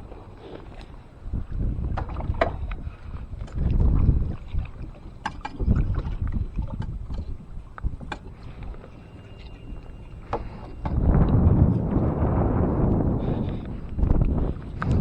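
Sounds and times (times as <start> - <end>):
wind rumbling on microphone: 0.0 - 15.0
gear knocking against kayak hull: 5.2 - 8.4.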